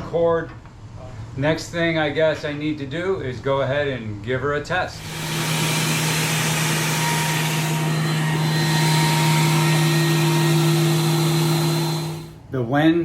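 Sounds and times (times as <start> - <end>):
thickness planer running: 4.9 - 12.4.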